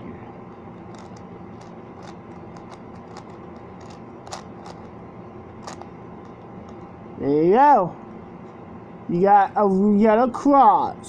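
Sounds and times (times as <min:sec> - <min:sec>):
puzzle cube plastic clicks: 0:00.8 - 0:04.9, 0:05.6 - 0:05.9.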